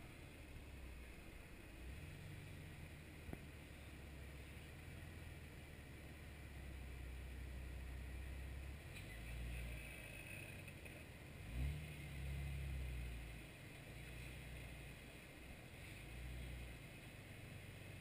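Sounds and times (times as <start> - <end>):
engine running at low revs: 0.0 - 18.0
engine revving: 8.9 - 14.9.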